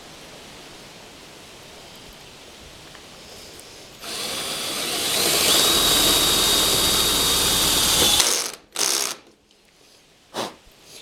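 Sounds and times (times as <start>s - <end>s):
power drill whining: 4.0s - 9.3s.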